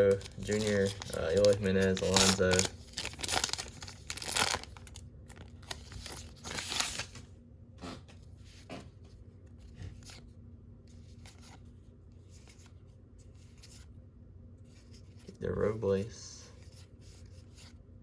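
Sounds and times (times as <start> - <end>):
wrapper tearing with crinkling: 0.0 - 7.2.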